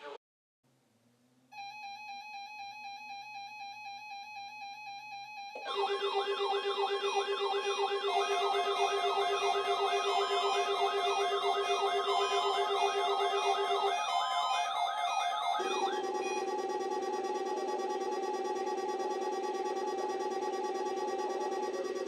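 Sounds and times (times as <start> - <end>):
electronic siren tone sweeping upward: 2.7 - 22.0
rapid electronic beeping: 5.6 - 22.0.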